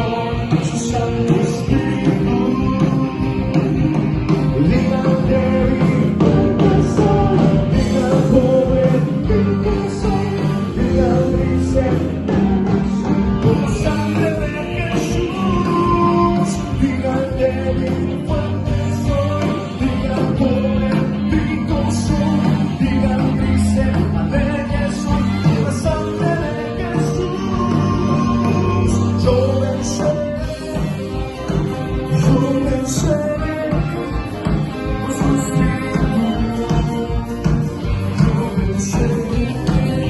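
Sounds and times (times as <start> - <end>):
band playing live: 0.0 - 40.0
person singing: 0.0 - 40.0.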